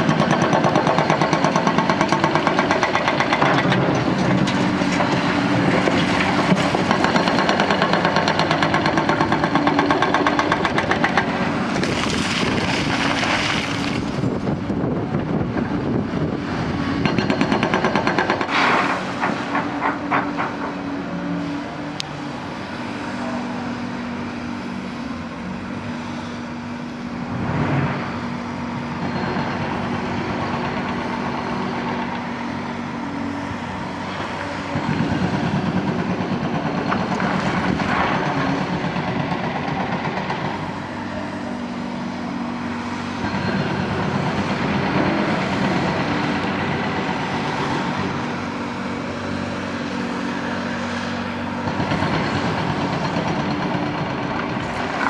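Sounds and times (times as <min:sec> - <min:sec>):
excavator diesel engine: 0:00.0 - 0:55.0
concrete rubble clattering: 0:10.4 - 0:14.2.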